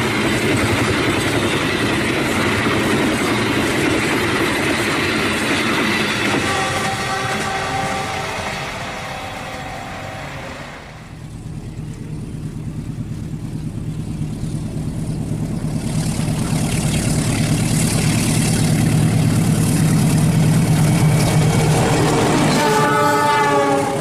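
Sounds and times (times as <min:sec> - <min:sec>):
diesel locomotive engine rumble: 0:00.0 - 0:24.0
wheel and rail noise: 0:00.0 - 0:24.0
locomotive horn: 0:06.2 - 0:11.2, 0:21.8 - 0:24.0.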